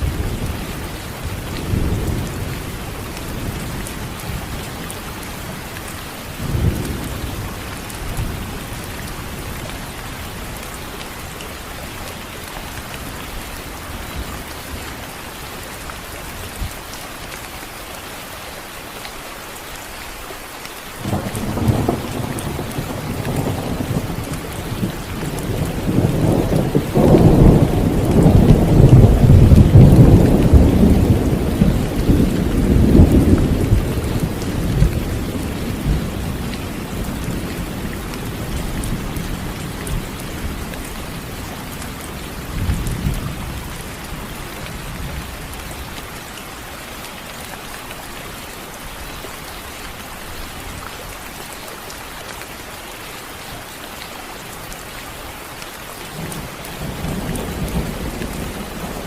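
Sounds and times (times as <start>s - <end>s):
steady rain: 0.0s - 59.0s
thunder rumbling: 21.0s - 44.0s.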